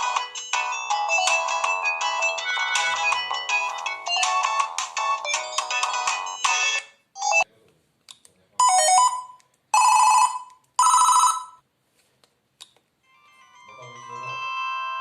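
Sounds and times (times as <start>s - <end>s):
phone alert tones: 8.6s - 11.6s.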